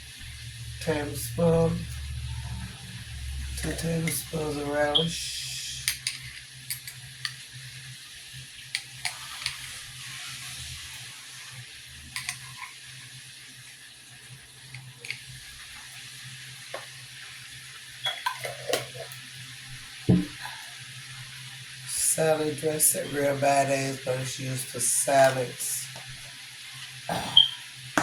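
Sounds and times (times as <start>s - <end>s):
steady hiss: 0.0s - 28.0s
spoon clinking against jar and bowl: 5.8s - 7.4s.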